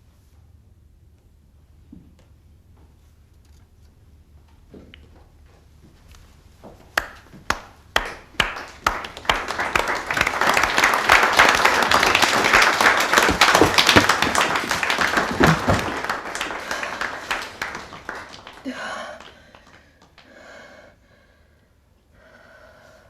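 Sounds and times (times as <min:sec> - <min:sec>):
single hand claps: 0:07.0 - 0:18.6
crowd applause: 0:08.4 - 0:19.8.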